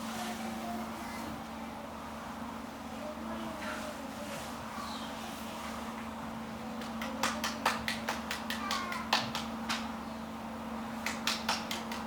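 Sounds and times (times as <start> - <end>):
sharp irregular taps and knocks: 6.8 - 9.9, 11.0 - 12.0.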